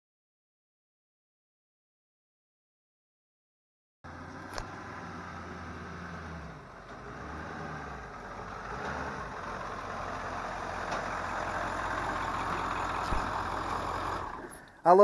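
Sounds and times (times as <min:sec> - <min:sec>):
diesel truck engine idling: 0:04.1 - 0:14.9.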